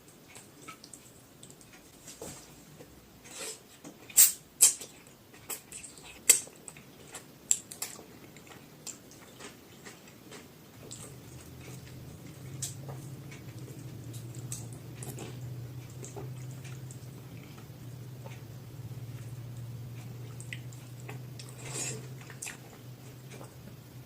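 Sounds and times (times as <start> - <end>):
low steady hum: 0.0 - 24.0
chewing and biting clicks: 4.0 - 18.5, 19.2 - 23.6.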